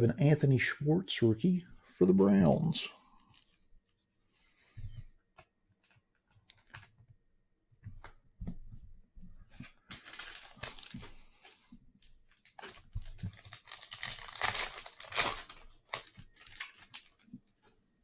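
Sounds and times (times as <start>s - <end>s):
card pack rustling: 9.9s - 11.6s, 12.4s - 17.3s.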